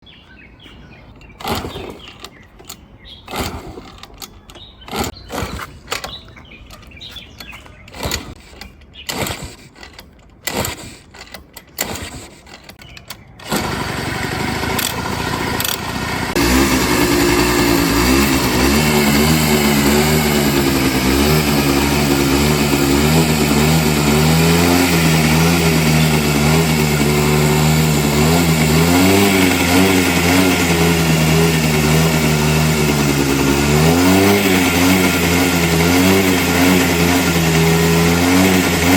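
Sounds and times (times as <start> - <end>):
motorcycle engine idling: 10.6 - 38.9.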